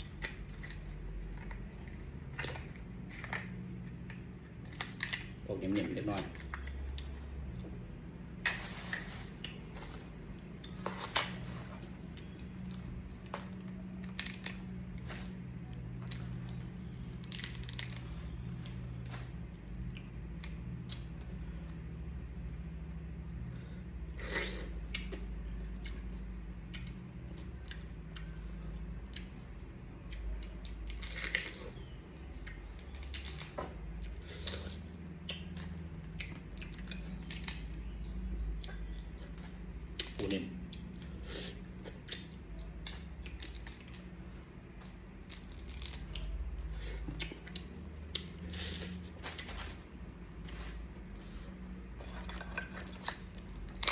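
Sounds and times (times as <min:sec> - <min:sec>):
crab shell cracking and chewing: 0:00.0 - 0:05.4, 0:24.6 - 0:53.9
steady low hum: 0:00.0 - 0:53.9.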